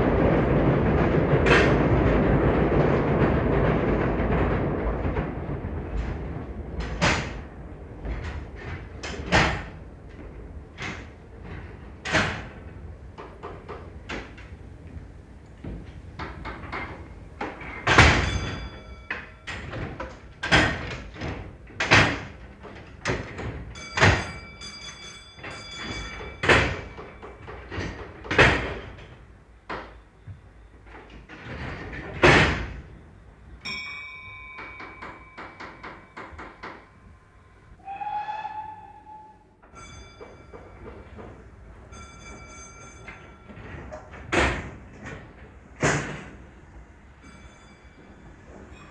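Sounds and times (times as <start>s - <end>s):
railway carriage doors slamming: 0.0s - 48.9s
whistle: 37.8s - 39.6s.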